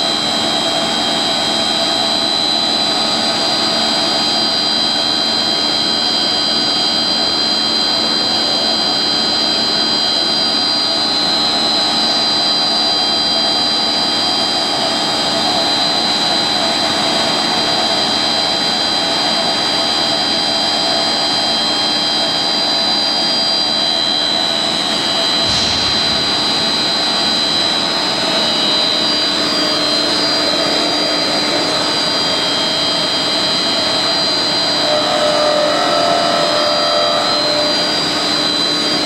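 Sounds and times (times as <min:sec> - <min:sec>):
steady high machine whine: 0:00.0 - 0:39.0
machine noise rush: 0:24.0 - 0:39.0.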